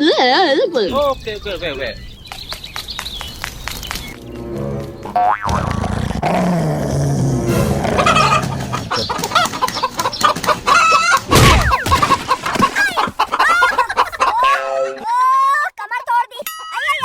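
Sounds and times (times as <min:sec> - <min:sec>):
low drawn-out animal sound: 0:05.6 - 0:09.2.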